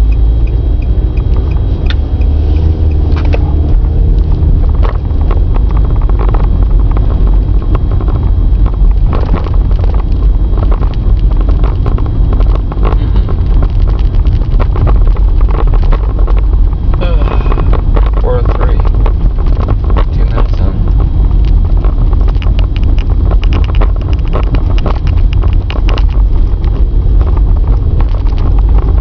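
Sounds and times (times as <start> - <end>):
road and engine rumble: 0.0 - 29.0
wind buffeting microphone: 0.0 - 29.0
small rattles and knocks: 21.4 - 29.0.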